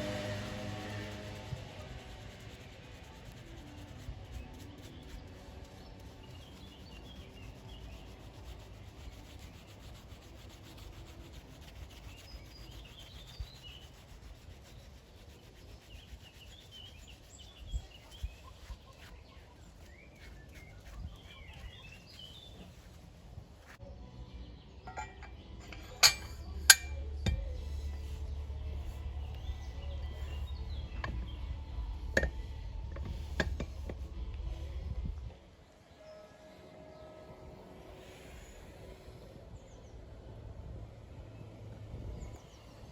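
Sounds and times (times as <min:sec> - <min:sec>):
soft rubbing or scrubbing: 0:00.1 - 0:23.9, 0:24.9 - 0:35.3
birds chirping: 0:15.2 - 0:40.1.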